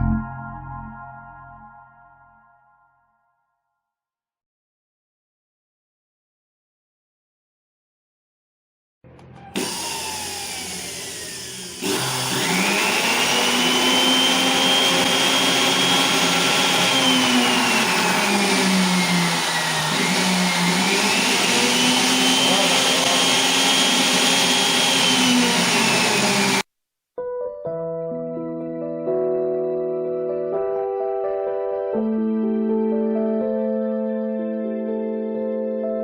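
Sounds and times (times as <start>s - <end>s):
angle grinder motor whining: 9.1s - 26.6s.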